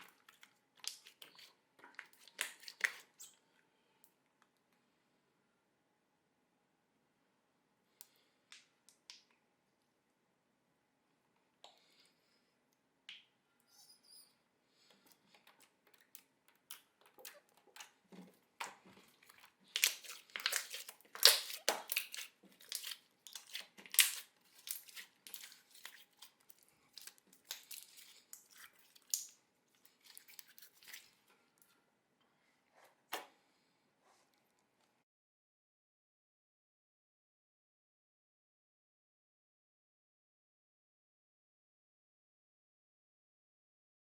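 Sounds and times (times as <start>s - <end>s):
slime popping and crackling: 18.6s - 29.3s.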